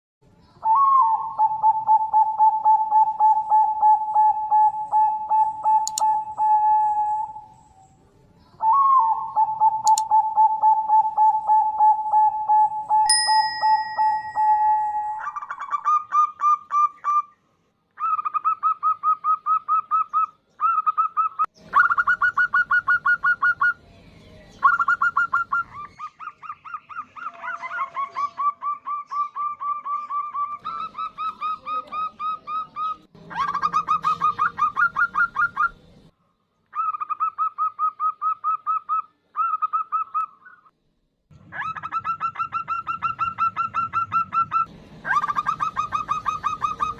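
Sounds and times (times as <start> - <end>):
dove cooing: 0.6 - 8.0, 8.6 - 13.2, 13.8 - 17.3, 24.6 - 36.0, 41.5 - 46.9
steady high tone: 9.0 - 15.3.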